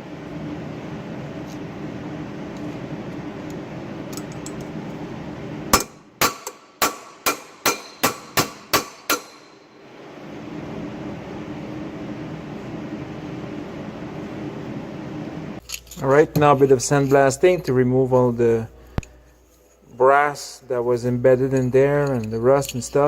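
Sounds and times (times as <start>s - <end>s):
steady low hum: 0.0s - 23.0s
hammer blows on steel: 5.7s - 9.7s.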